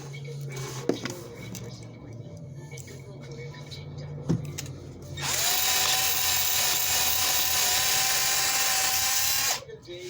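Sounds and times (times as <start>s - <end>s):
drill with abrasive wheel scouring: 5.2s - 9.6s.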